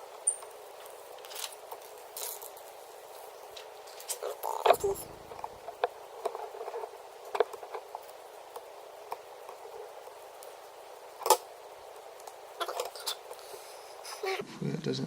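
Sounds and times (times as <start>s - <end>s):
steady low hiss: 0.0s - 15.0s
small tools clicking and tapping: 0.2s - 2.6s.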